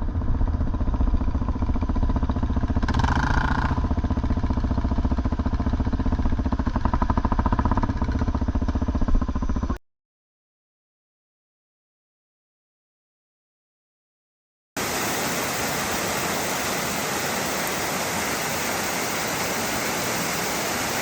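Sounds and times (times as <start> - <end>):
off-road motorcycle engine: 0.0 - 9.8.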